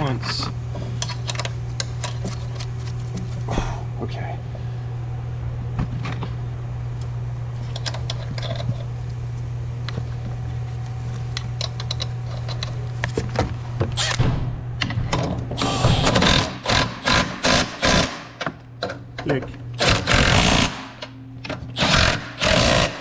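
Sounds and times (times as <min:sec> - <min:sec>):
steady low hum: 0:00.0 - 0:13.8.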